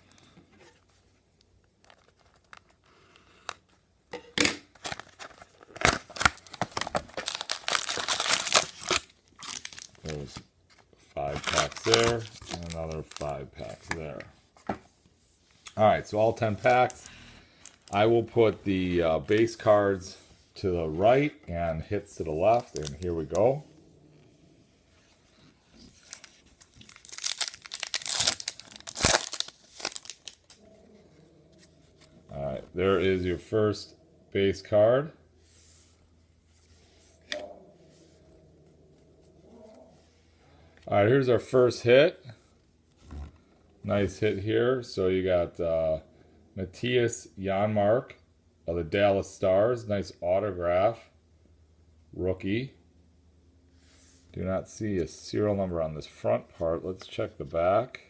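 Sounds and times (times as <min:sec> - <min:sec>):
wrapping tearing and crinkling: 0:01.7 - 0:03.6, 0:04.7 - 0:10.4, 0:11.2 - 0:13.7, 0:16.4 - 0:18.2, 0:22.4 - 0:23.4, 0:25.8 - 0:30.6.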